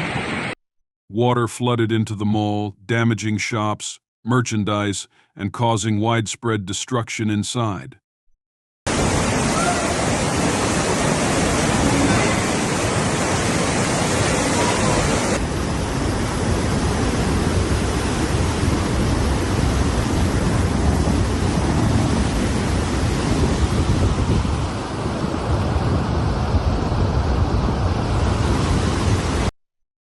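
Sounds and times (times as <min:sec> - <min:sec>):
rushing floodwater: 0:08.9 - 0:29.5.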